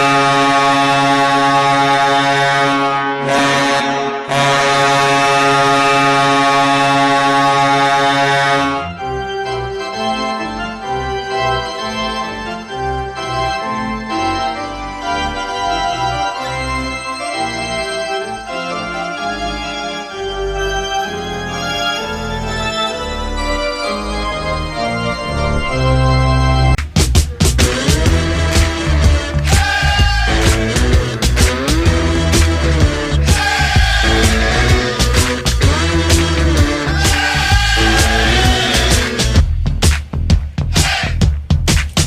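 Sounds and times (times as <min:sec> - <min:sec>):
goal horn blast: 0:00.0 - 0:09.1, 0:27.6 - 0:39.4
organ playing a quick melody: 0:00.0 - 0:26.8.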